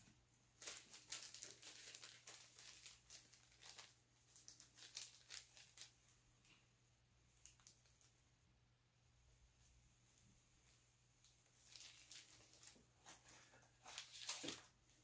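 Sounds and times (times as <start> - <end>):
plastic packaging crinkling: 0.6 - 6.0, 11.6 - 14.7.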